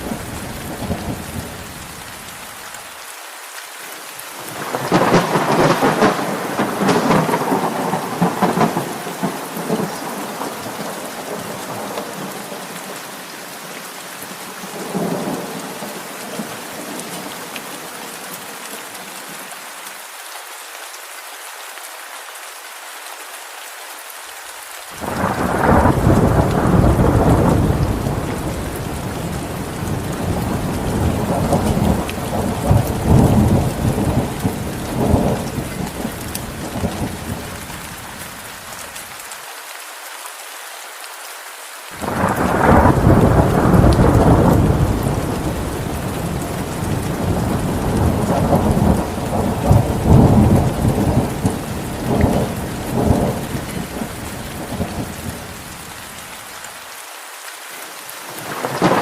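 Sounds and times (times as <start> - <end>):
steady rain: 0.0 - 59.0
rolling thunder: 4.6 - 12.3, 25.0 - 37.6, 42.0 - 55.5, 58.4 - 59.0.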